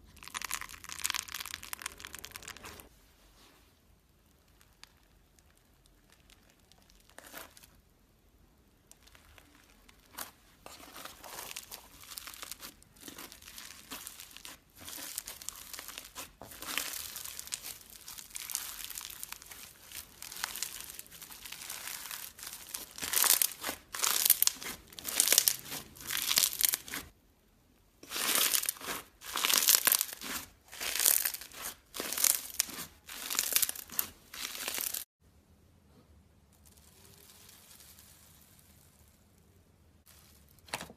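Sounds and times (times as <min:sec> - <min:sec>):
crunchy slime being squeezed: 0:00.0 - 0:02.9, 0:04.4 - 0:07.8, 0:08.9 - 0:27.1, 0:28.0 - 0:35.1.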